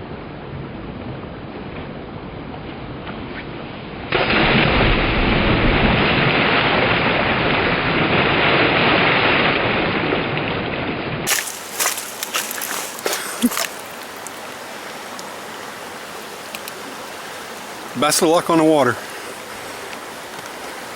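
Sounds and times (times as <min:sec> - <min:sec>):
river water rushing: 0:11.3 - 0:20.9.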